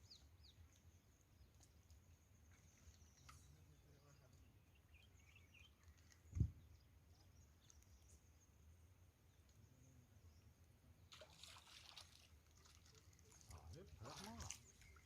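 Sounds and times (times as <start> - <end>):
faint bird chirps: 0.0 - 8.7.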